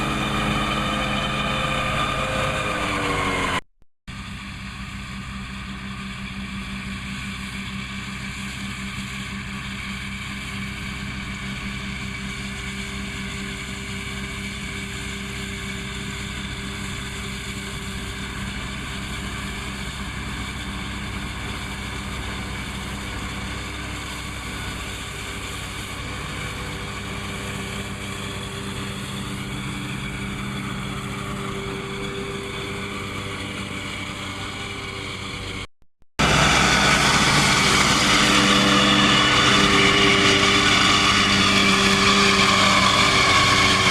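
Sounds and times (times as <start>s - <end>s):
tractor engine running: 0.0s - 43.9s.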